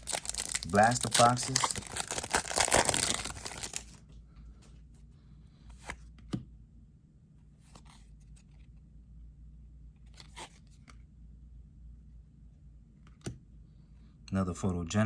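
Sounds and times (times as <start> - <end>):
foil pack tearing and crinkling: 0.0 - 4.0.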